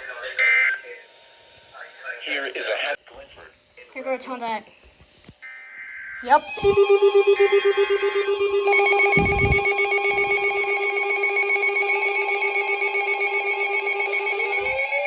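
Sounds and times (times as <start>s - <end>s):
buzzy pulsing alert tone: 6.2s - 15.0s
rising alert tone: 6.2s - 15.0s.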